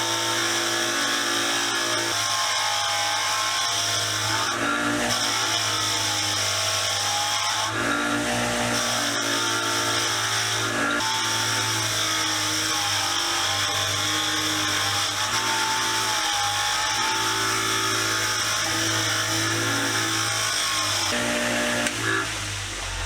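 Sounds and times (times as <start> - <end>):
wire wheel motor hum: 15.2 - 23.0.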